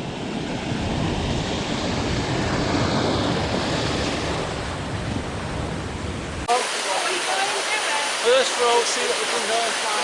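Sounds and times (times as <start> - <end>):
wind on microphone: 0.0 - 6.5.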